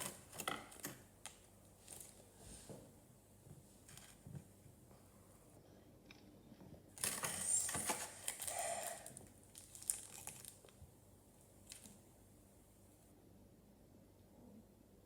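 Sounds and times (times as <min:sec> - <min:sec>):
packaging crinkling: 0:07.0 - 0:10.8, 0:11.6 - 0:12.0.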